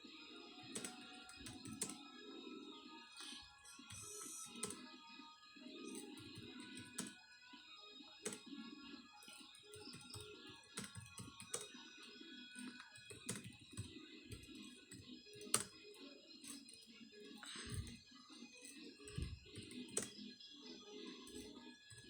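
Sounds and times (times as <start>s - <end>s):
faint background music: 0.0s - 22.0s
typing on a keyboard: 0.6s - 2.1s, 3.2s - 4.9s, 5.9s - 7.2s, 8.2s - 8.6s, 9.2s - 20.3s, 21.3s - 22.0s.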